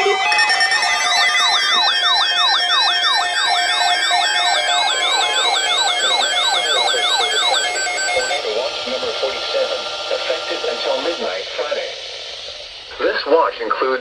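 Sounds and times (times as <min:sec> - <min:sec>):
electronic siren yelping: 0:00.0 - 0:11.2
other siren tones: 0:00.0 - 0:11.4.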